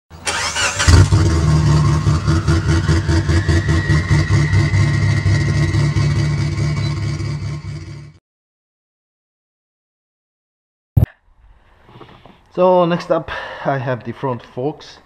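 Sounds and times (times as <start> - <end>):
engine starting and idling: 0.2 - 8.0.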